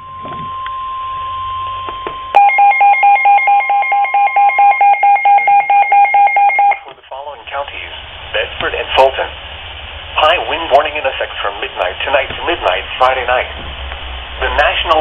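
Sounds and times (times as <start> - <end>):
steady alarm tone: 0.0 - 6.9
radio hiss: 6.8 - 15.0.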